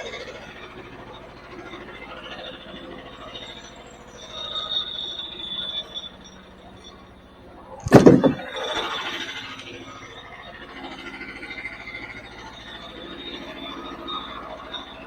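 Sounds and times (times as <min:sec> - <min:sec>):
loud bang with clatter: 0:07.8 - 0:08.4.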